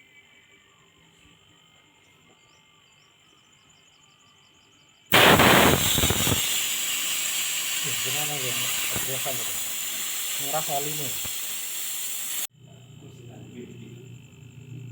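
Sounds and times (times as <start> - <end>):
pressurised gas hissing: 5.1 - 12.5.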